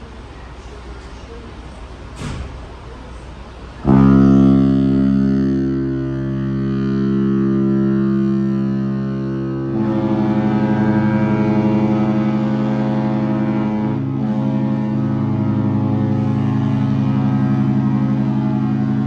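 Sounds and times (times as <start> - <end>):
deep ship horn chord: 3.8 - 19.0
ship horns blasting: 3.8 - 19.0.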